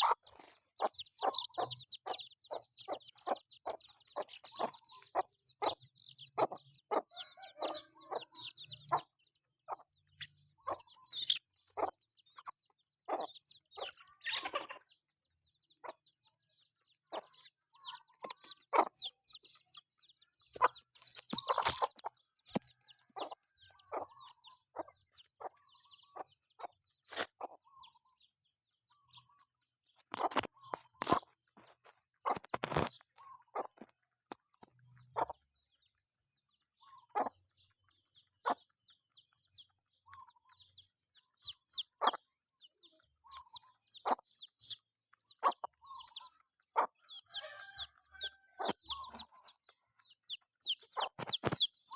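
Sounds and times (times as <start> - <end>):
chickens clucking: 0.0 - 51.9
rapid high chirping: 17.2 - 22.6, 45.4 - 51.9
scratchy noises: 30.0 - 35.2, 50.8 - 51.9.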